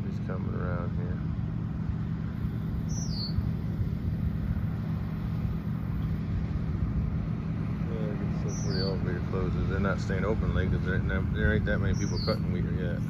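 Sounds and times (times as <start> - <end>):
diesel engine droning: 0.0 - 13.0
bird chirp: 2.4 - 3.8, 8.3 - 9.2, 11.7 - 13.0.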